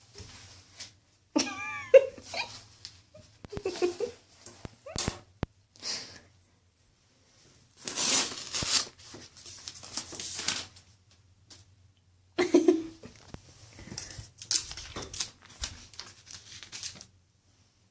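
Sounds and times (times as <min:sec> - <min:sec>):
lint-roller sheet crinkling: 0:07.8 - 0:11.2, 0:13.2 - 0:17.2.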